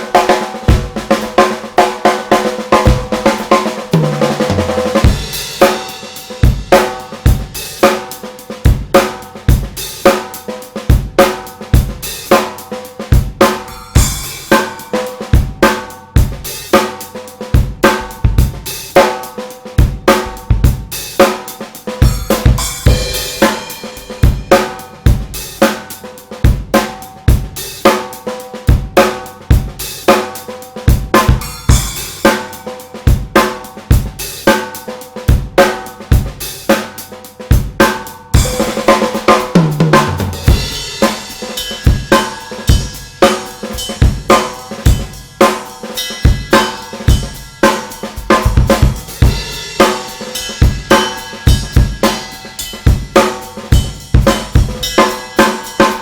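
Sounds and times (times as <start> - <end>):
snare drum cracking: 0.0 - 8.2, 21.2 - 27.0, 37.8 - 56.0
cymbal crash: 22.0 - 25.7, 38.4 - 56.0
hi-hat: 40.2 - 56.0
kick drum: 48.3 - 49.4.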